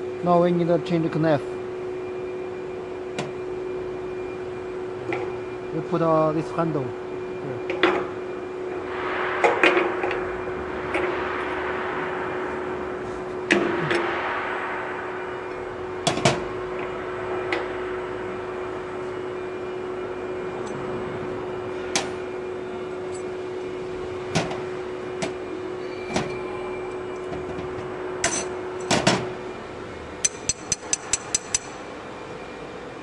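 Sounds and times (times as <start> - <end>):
sharp metallic clicks and knocks: 30.2 - 31.8.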